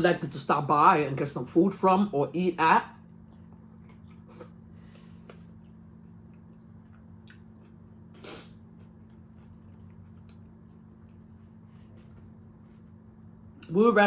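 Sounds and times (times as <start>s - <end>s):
steady low hum: 0.0s - 14.0s
person chewing food: 3.1s - 13.7s.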